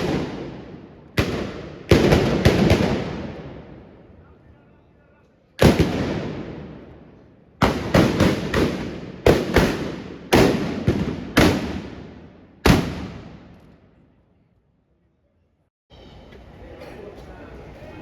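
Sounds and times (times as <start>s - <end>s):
gunshots with echoing tail: 0.0s - 3.9s, 5.6s - 13.6s.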